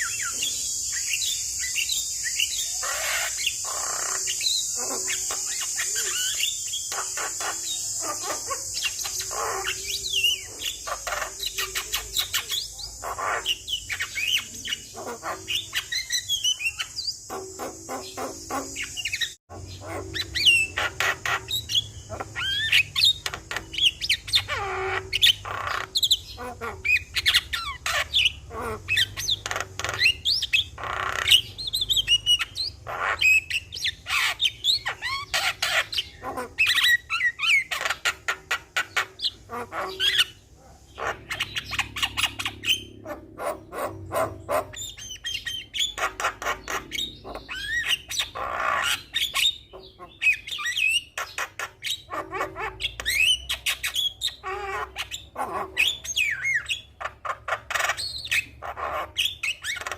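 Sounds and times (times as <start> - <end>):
myna bird singing: 0.0 - 59.9.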